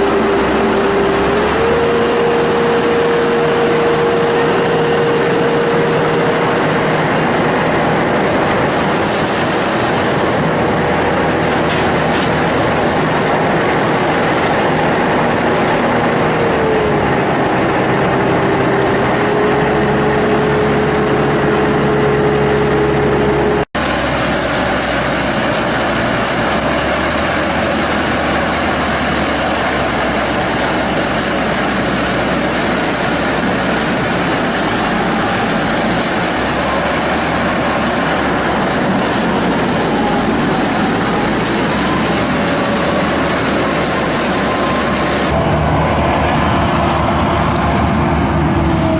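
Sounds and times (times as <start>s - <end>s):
whining tone sliding in pitch: 0.0s - 7.7s
harvester engine and machinery: 0.0s - 48.9s.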